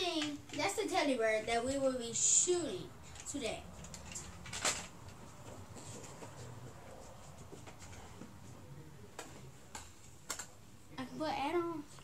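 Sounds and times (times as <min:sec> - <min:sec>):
faint rustling and handling: 0:03.0 - 0:10.3.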